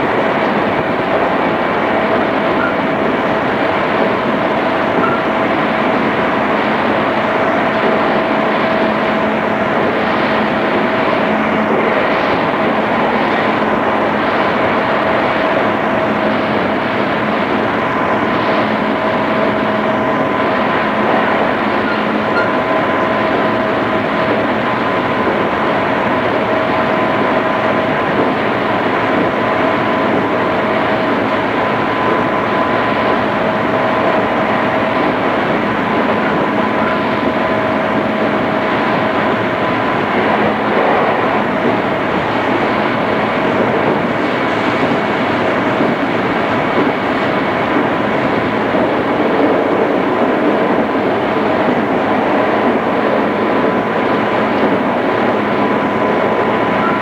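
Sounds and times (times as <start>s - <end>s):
thin steady whine: 0.0s - 57.0s
train wheels rumbling on rail: 0.0s - 57.0s
faint high tone: 5.0s - 5.4s, 56.7s - 57.0s.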